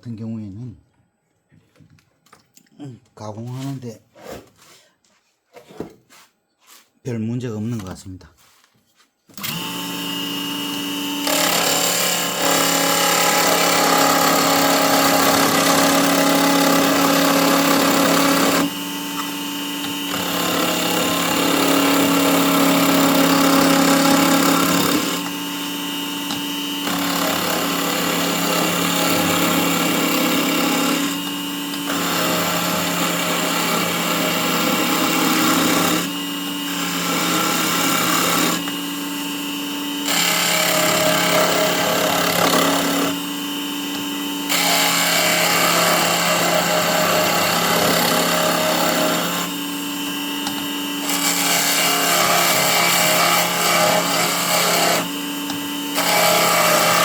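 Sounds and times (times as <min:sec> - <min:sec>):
lathe motor hum: 0:09.4 - 0:57.0
chisel scraping spinning wood: 0:11.2 - 0:18.7, 0:26.9 - 0:36.1, 0:36.7 - 0:38.7, 0:40.0 - 0:43.1, 0:43.9 - 0:49.5, 0:50.4 - 0:57.0.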